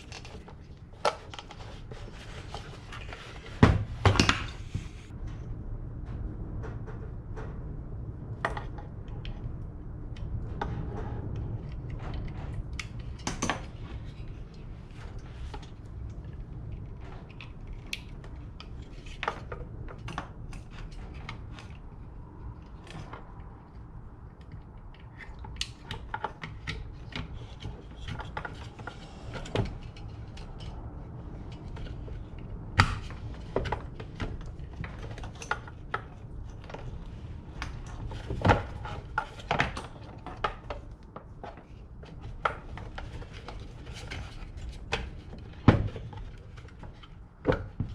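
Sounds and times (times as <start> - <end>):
steady low rumble: 0.0 - 26.1, 26.8 - 47.9.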